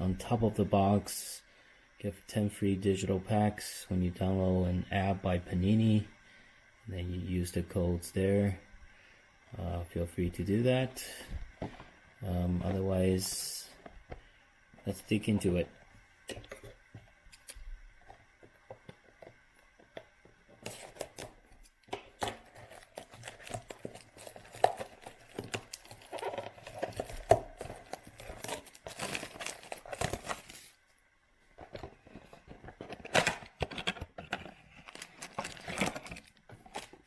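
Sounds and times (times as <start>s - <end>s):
card packs crinkling: 18.9s - 37.0s
cardboard box tearing: 22.2s - 30.7s, 33.0s - 36.9s.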